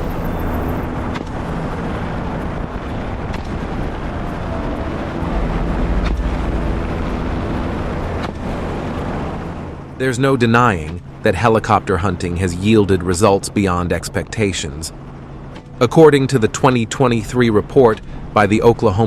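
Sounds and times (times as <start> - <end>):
wind buffeting microphone: 0.0 - 13.6
helicopter rotor and engine: 0.0 - 19.0.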